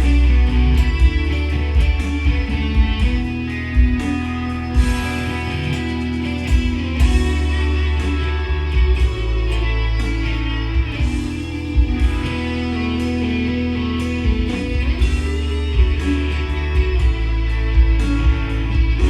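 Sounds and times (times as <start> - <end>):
bass: 0.0 - 19.0
strummed guitar chords: 0.0 - 19.0.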